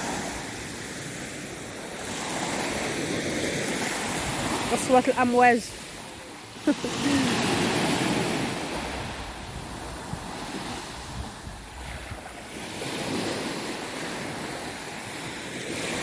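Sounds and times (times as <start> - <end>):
sea waves breaking on shore: 0.0 - 16.0
wind buffeting microphone: 7.0 - 16.0.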